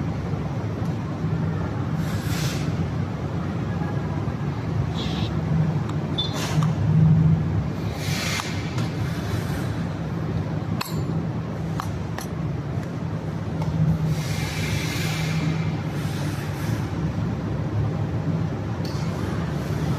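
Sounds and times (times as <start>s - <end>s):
steady low hum: 0.0s - 19.9s
hiss: 2.0s - 2.8s, 8.0s - 9.8s, 14.1s - 16.9s.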